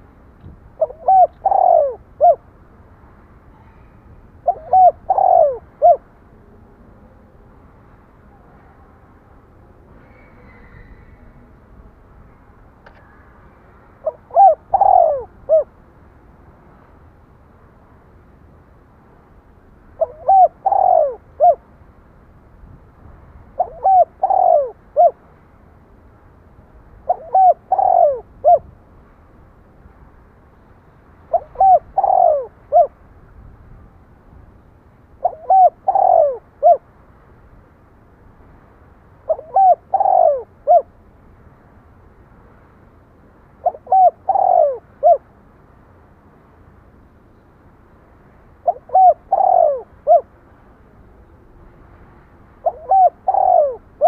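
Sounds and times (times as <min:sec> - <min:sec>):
dove cooing: 0:00.8 - 0:02.5, 0:03.6 - 0:06.0, 0:14.0 - 0:15.7, 0:20.0 - 0:21.6, 0:23.6 - 0:25.2, 0:27.1 - 0:28.7, 0:31.3 - 0:33.0, 0:35.2 - 0:36.8, 0:39.3 - 0:40.9, 0:43.6 - 0:45.2, 0:48.6 - 0:50.3, 0:52.6 - 0:54.0.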